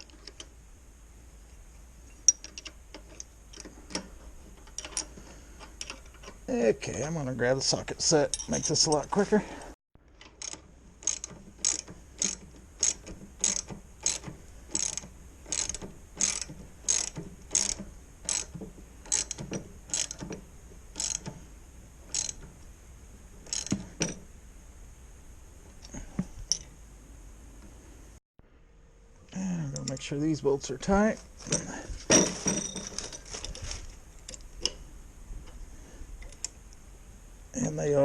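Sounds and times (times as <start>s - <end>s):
ratchet wrench clicking: 10.3s - 21.4s, 22.1s - 22.4s, 23.5s - 24.2s.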